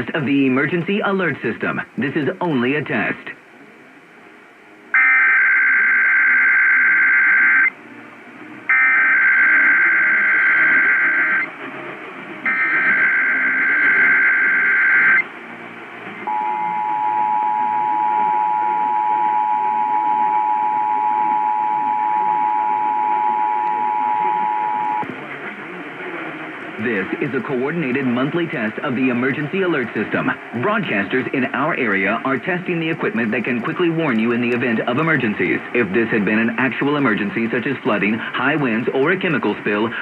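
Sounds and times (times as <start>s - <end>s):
radio static: 8.7s - 40.0s
two-tone attention signal: 12.5s - 15.2s, 16.3s - 25.0s.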